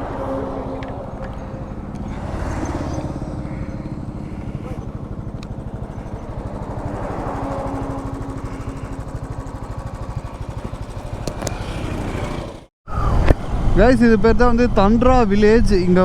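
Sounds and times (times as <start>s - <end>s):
motorcycle engine running: 0.0s - 12.7s.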